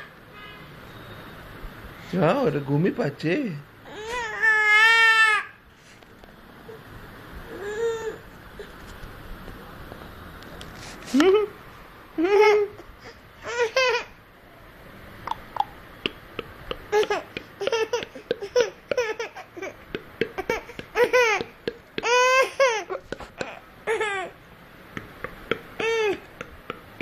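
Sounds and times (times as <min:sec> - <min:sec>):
baby babbling and laughing: 0:07.5 - 0:08.2, 0:12.2 - 0:14.2, 0:16.9 - 0:24.4, 0:25.6 - 0:27.0.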